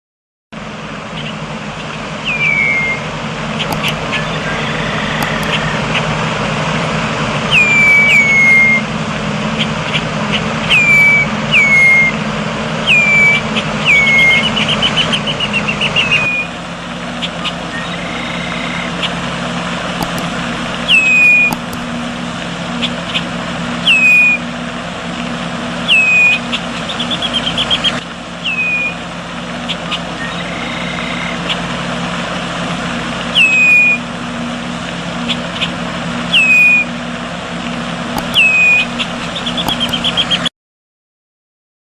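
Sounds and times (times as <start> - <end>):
bird whistling call: 3.7 - 6.0, 7.5 - 8.8, 10.7 - 12.1.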